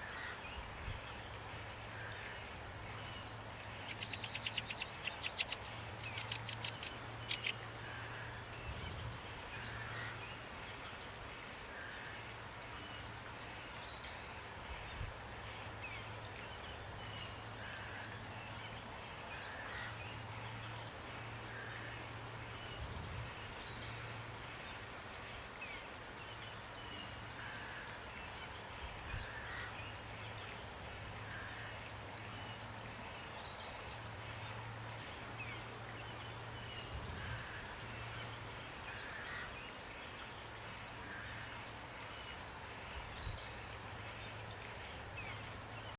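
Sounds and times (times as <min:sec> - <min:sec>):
rain hiss: 0:00.0 - 0:45.9
songbirds chirping: 0:00.0 - 0:45.9.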